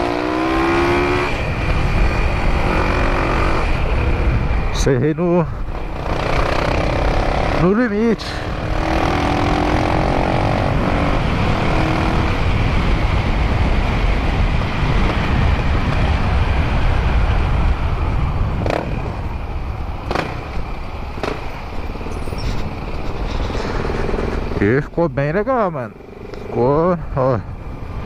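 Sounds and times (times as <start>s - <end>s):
wind rushing over microphone: 0.0s - 28.0s
motorcycle engine running: 5.6s - 16.3s.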